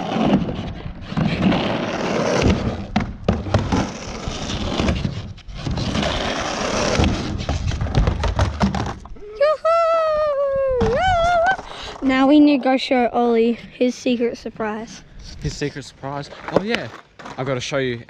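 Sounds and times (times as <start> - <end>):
skateboard wheels rolling on ramp: 0.0 - 9.2
skateboard knocks: 2.4 - 3.9, 6.8 - 9.1.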